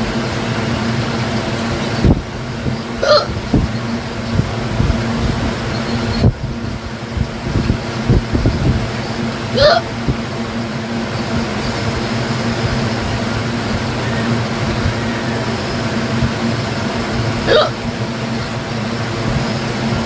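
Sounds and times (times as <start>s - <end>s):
steady background hum: 0.0s - 20.0s
woman hiccuping: 3.0s - 3.3s, 9.6s - 9.9s, 17.5s - 17.8s.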